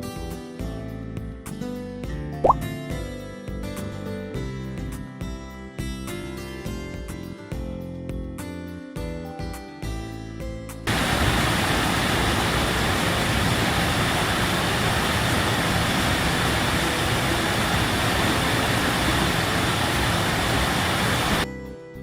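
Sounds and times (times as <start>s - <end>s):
waterfall roaring: 10.9s - 21.4s.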